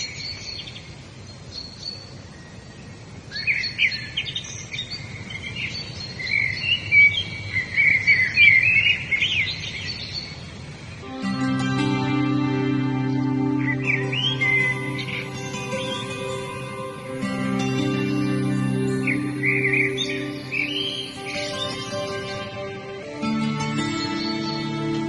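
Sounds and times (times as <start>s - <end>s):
songbirds chirping: 0.0s - 25.0s
soft instrumental music: 11.0s - 25.0s.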